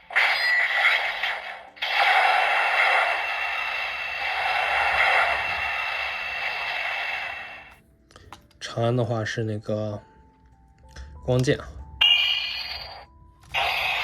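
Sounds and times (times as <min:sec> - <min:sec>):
electronic beam sound effect: 0:00.0 - 0:07.7, 0:12.0 - 0:14.0
toy speaker noisy blast with tone: 0:00.0 - 0:07.7, 0:12.0 - 0:14.0.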